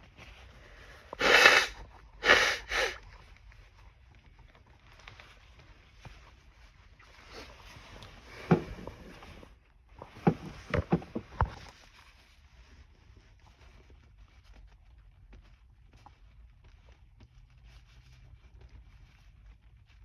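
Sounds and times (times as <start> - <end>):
person sneezing: 1.1 - 3.0.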